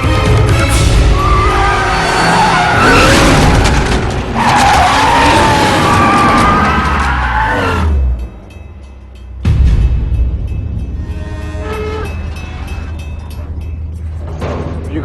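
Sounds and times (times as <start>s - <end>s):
engine and road noise: 0.0s - 15.0s
car tyres squealing: 1.1s - 8.0s.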